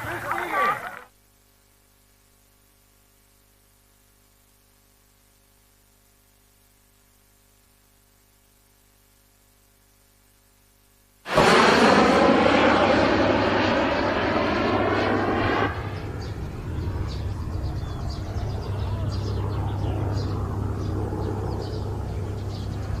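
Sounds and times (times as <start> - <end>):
aircraft drone: 11.3 - 23.0
propeller aircraft passing: 11.3 - 23.0.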